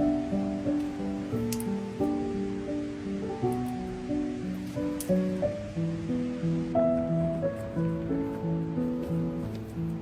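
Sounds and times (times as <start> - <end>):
plucked-string instrumental melody: 0.0 - 10.0.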